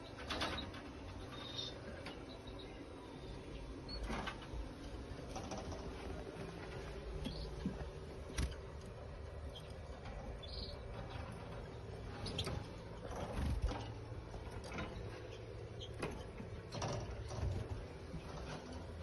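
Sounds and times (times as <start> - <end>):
birds clicking: 0.0 - 19.0
cage birds chirping: 0.0 - 19.0
low steady hum: 0.0 - 19.0
wings fluttering: 10.9 - 15.3.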